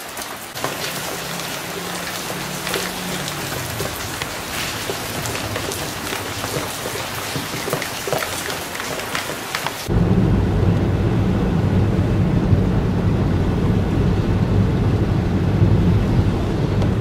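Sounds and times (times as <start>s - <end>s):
loud low rumble: 9.9s - 17.0s.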